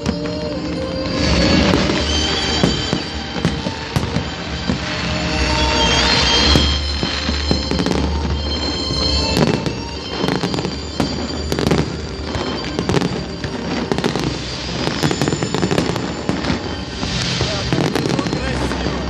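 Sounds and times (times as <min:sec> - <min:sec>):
fireworks bangs and crackling: 0:00.0 - 0:19.0.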